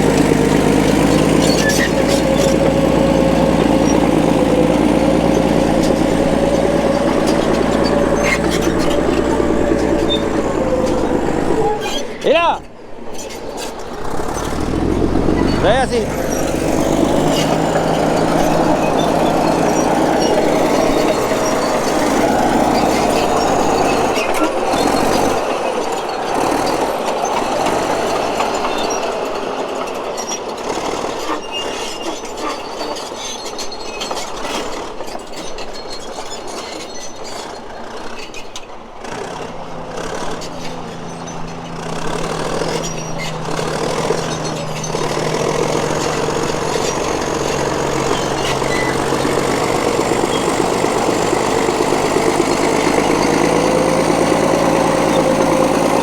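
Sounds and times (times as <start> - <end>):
heavy diesel engine running: 0.0 - 56.0
metallic clanks and clatter: 13.1 - 56.0.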